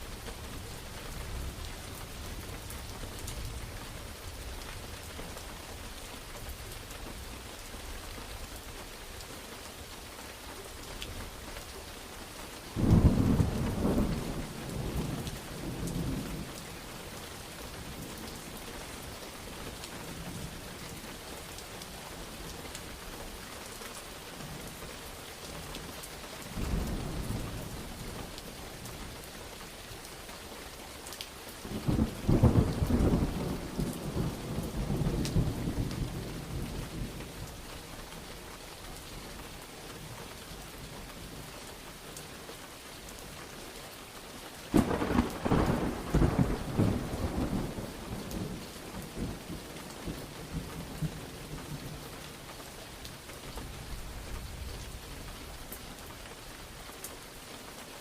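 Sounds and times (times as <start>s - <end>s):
steady rain: 0.0s - 58.0s
thunder rumbling: 12.8s - 16.7s, 44.7s - 52.0s.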